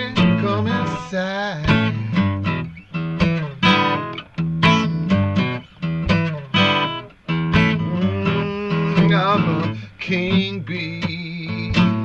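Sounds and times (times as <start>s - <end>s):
solo guitar blues riff: 0.0s - 12.0s.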